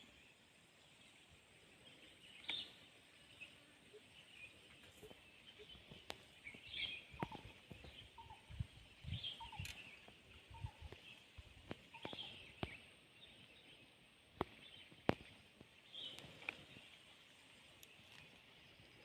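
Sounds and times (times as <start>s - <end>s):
high bird chirps: 5.5s - 11.2s.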